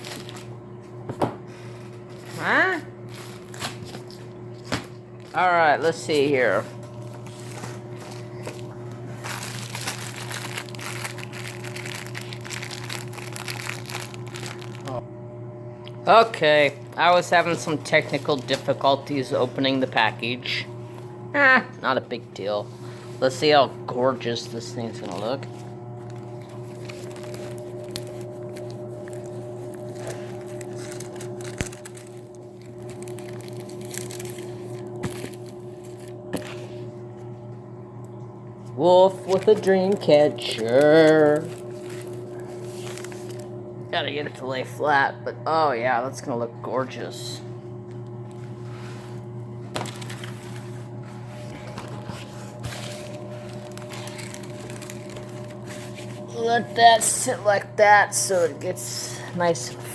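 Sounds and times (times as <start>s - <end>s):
packaging crinkling: 0.0s - 0.5s, 3.0s - 5.4s, 7.0s - 15.0s, 24.6s - 36.8s, 39.1s - 43.6s, 48.2s - 57.1s
canvas crackling and rustling: 9.2s - 15.0s.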